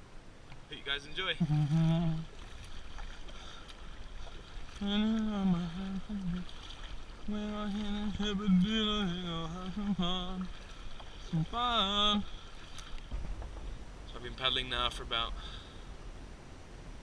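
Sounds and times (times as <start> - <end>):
low background wash: 0.0 - 17.0
person singing or humming: 1.4 - 2.3, 4.8 - 6.6, 7.3 - 10.6, 11.3 - 12.4.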